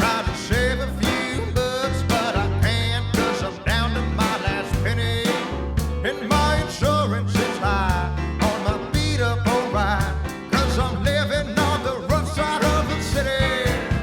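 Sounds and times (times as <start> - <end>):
country-rock song with singing: 0.0 - 14.0.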